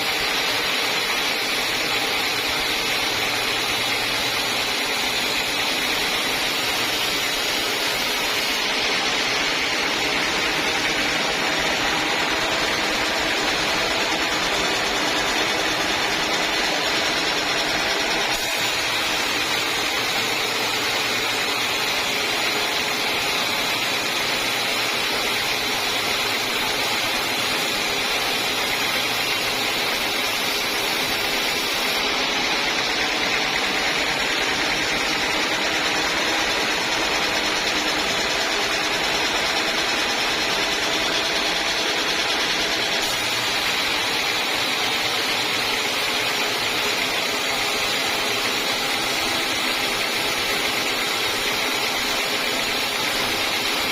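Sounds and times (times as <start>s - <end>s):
sawmill saw cutting log: 0.0s - 53.9s.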